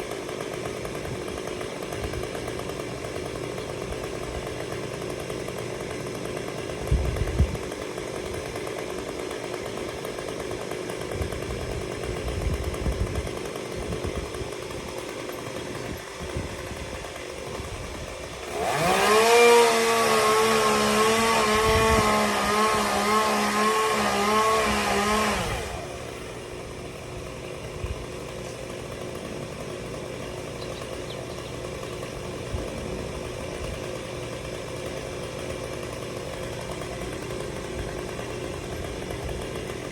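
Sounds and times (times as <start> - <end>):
chainsaw running and revving: 0.0 - 39.9.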